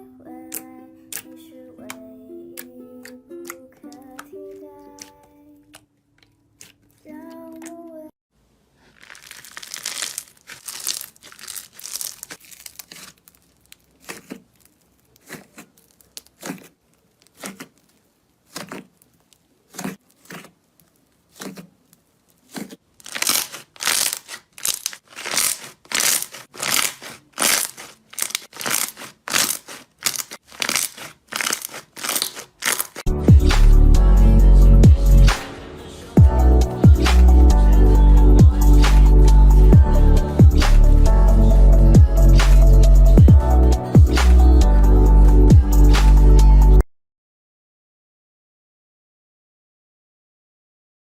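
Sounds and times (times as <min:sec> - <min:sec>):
slime squished by hand: 0:05.0 - 0:07.7, 0:08.8 - 0:33.8.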